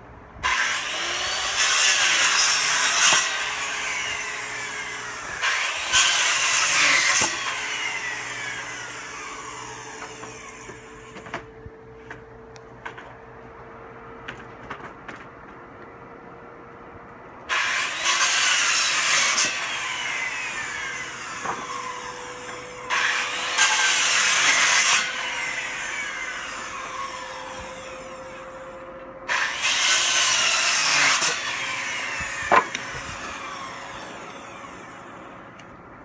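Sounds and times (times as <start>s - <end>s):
power saw cutting wood: 0.4s - 12.2s, 17.4s - 35.7s
saw blade spinning down whine: 19.4s - 35.6s.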